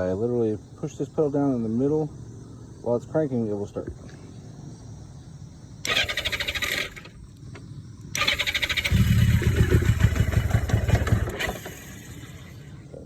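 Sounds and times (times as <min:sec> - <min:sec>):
electric starter cranking: 0:05.8 - 0:07.2, 0:08.1 - 0:12.8
motorcycle engine running: 0:08.2 - 0:12.7.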